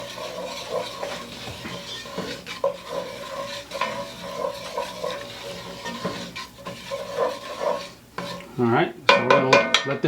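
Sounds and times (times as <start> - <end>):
stirring roux in a pot: 0.0 - 9.4.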